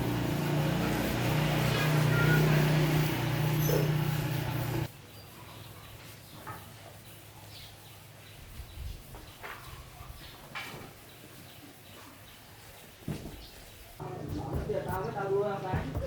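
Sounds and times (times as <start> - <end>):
motor humming: 0.0 - 4.9.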